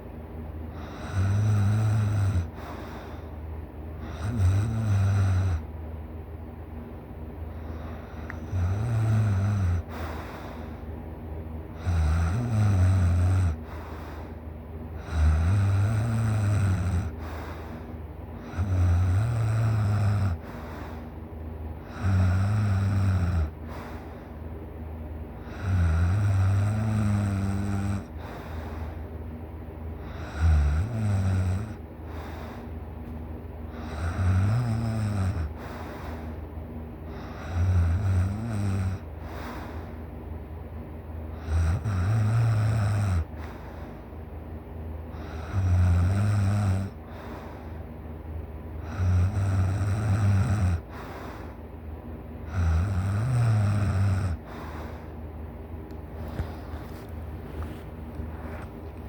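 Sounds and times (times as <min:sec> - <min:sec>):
quiet breathing: 0:00.0 - 0:05.8, 0:07.4 - 0:40.3, 0:41.2 - 0:44.4, 0:45.0 - 0:59.0
person snoring: 0:00.8 - 0:03.1, 0:04.0 - 0:05.6, 0:07.6 - 0:10.7, 0:11.8 - 0:14.3, 0:15.0 - 0:17.8, 0:18.4 - 0:21.0, 0:21.8 - 0:24.0, 0:25.4 - 0:28.9, 0:30.0 - 0:32.6, 0:33.7 - 0:36.4, 0:37.1 - 0:39.8, 0:41.4 - 0:43.6, 0:45.2 - 0:47.6, 0:48.8 - 0:51.1, 0:52.5 - 0:55.1.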